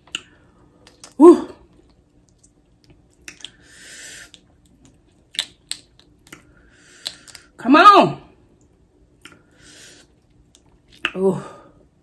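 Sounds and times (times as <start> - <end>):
woman exclaiming woo: 1.2 - 1.6.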